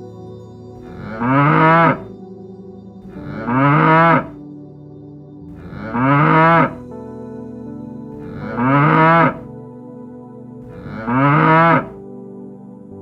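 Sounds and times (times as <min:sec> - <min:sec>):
soft background music: 0:00.0 - 0:13.0
cow mooing: 0:00.8 - 0:02.1, 0:03.1 - 0:04.4, 0:05.6 - 0:06.8, 0:08.2 - 0:09.4, 0:10.7 - 0:12.0.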